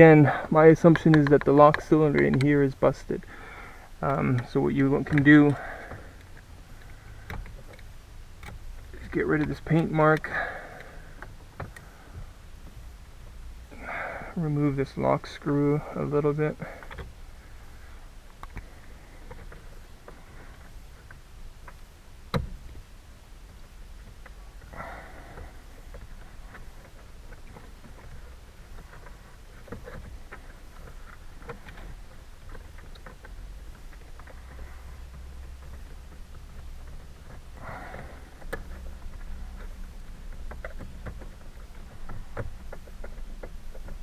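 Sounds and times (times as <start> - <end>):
hand tools clicking and tapping: 0.2 - 12.8, 23.5 - 44.0.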